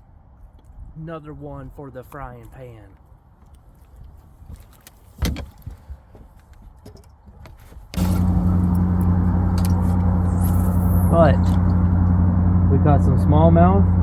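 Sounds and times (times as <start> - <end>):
boat motor running: 8.0 - 14.0.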